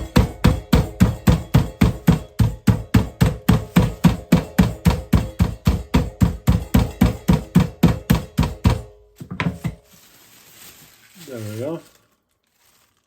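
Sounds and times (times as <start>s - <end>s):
rolling pin pounding meat: 0.0s - 9.8s.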